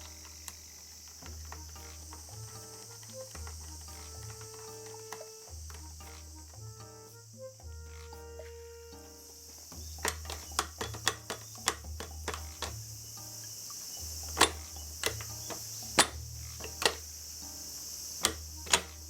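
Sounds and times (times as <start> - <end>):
crickets droning: 0.0 - 19.0
metal tools clicking and knocking: 9.7 - 17.6, 18.2 - 19.0.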